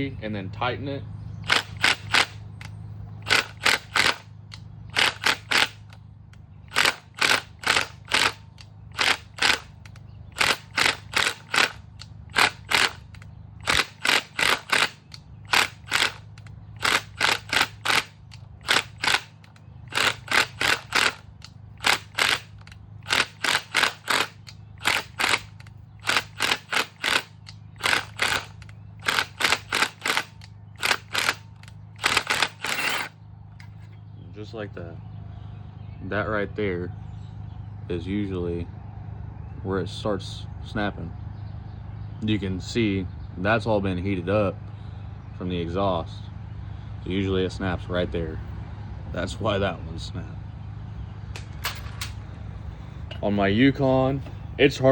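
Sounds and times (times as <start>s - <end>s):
steady low hum: 0.0s - 54.9s
impact wrench zipping: 1.4s - 4.3s, 4.9s - 6.0s, 6.6s - 34.0s.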